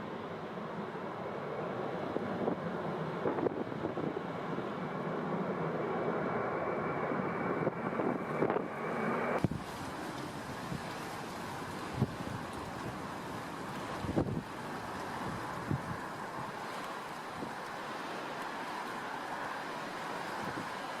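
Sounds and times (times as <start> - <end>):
airplane engine noise: 0.0 - 21.0
wind buffeting microphone: 2.0 - 4.8, 7.0 - 17.8.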